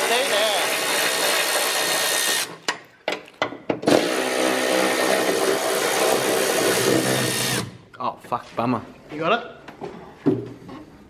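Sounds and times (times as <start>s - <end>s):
power tool whining: 0.0s - 2.6s, 3.8s - 7.8s.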